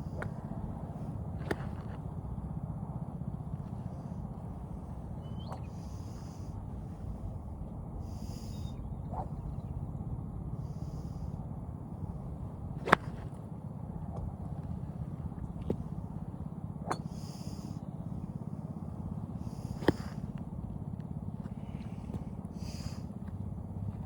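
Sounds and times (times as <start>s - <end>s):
golf club striking ball: 12.4s - 16.1s, 16.8s - 17.4s, 19.4s - 20.6s.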